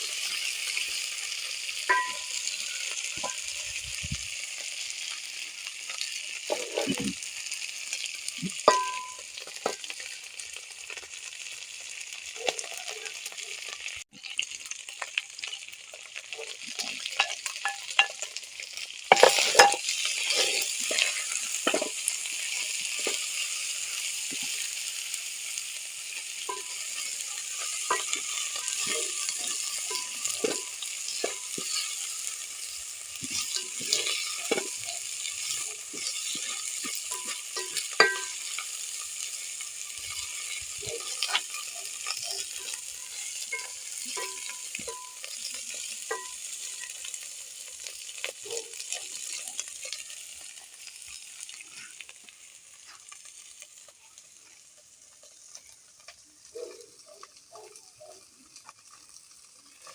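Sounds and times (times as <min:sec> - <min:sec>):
food sizzling in a pan: 0:00.0 - 0:59.9
utensil scraping a pan: 0:06.5 - 0:07.0, 0:19.1 - 0:24.7, 0:26.1 - 0:47.0.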